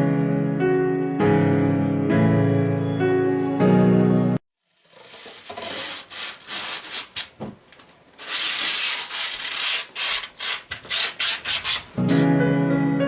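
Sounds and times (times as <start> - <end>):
rubbing and scraping: 4.6 - 7.6, 8.2 - 12.3.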